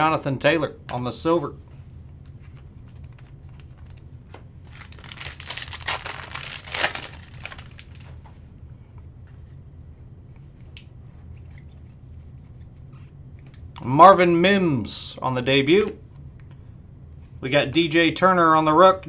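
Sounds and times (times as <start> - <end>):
low steady hum: 0.0 - 19.0
foil wrapper tearing and crinkling: 4.7 - 8.1.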